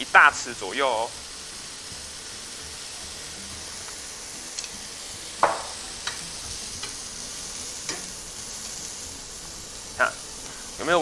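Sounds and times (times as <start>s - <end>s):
mushrooms sizzling in hot oil: 0.0s - 11.0s
spatula knocking against pan: 5.4s - 5.8s.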